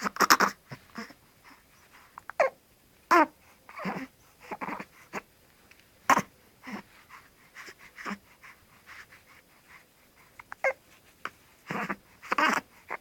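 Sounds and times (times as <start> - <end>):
squeaky hiccups: 0.0 - 1.1, 10.5 - 10.8.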